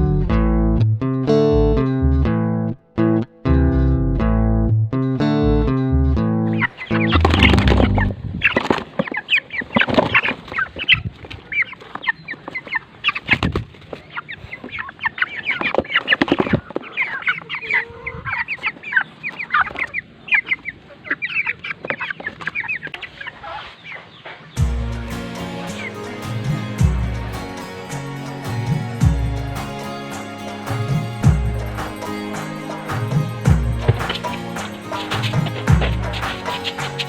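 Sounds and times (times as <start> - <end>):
chickens chirping and clucking: 6.6 - 24.6, 31.6 - 37.0.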